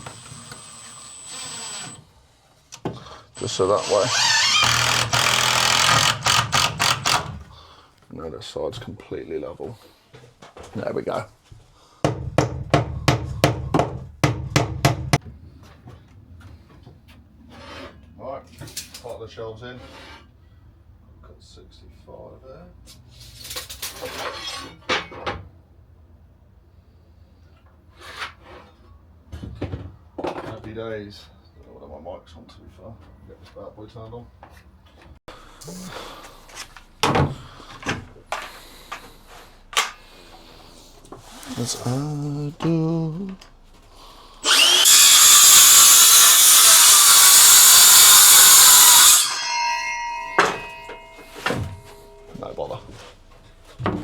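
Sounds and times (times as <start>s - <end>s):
electric power saw cutting wood: 0.0s - 2.0s, 3.4s - 7.4s, 35.6s - 36.2s, 44.4s - 52.4s.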